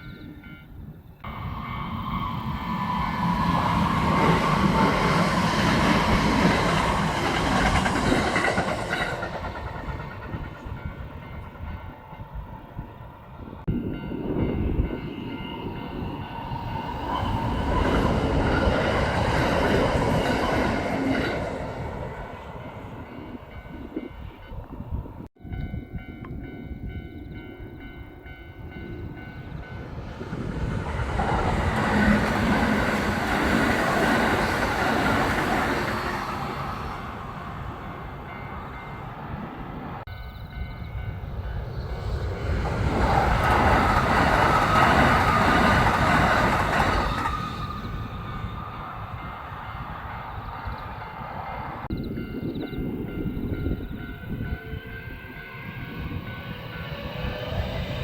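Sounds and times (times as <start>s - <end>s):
electric train passing: 0.0s - 58.0s
wheels clacking over rail joints: 2.7s - 11.7s, 29.6s - 40.6s, 41.6s - 48.3s.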